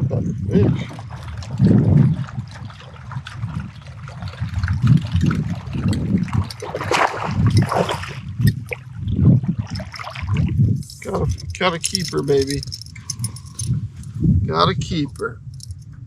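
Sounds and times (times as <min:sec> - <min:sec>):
water slapping against boat hull: 0:00.5 - 0:12.9
rushing water splash: 0:00.6 - 0:12.0.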